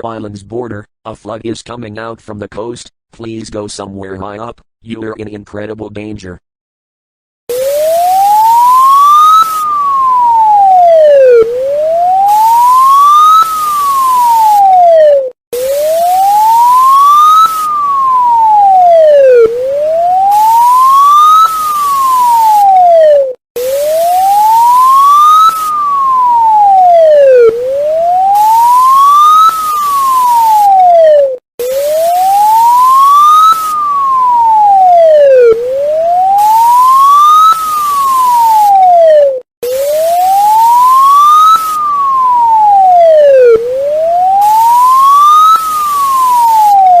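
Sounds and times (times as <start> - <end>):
emergency siren wailing: 7.5 - 47.0.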